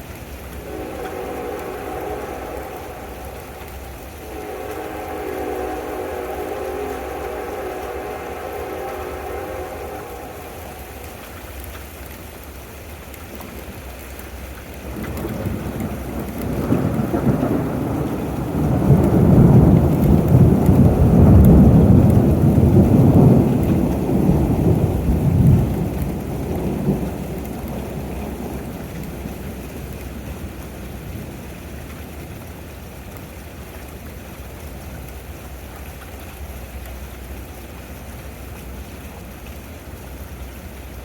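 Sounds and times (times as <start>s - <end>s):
steady rain hissing: 0.0s - 41.0s
rolling thunder: 0.2s - 11.9s, 14.8s - 32.2s.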